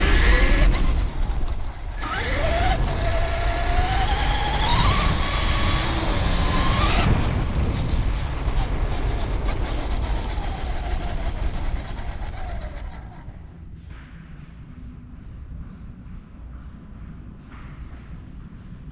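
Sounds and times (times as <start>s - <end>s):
rc car motor whining: 0.0s - 13.3s
car rumbling over ground: 0.0s - 13.5s.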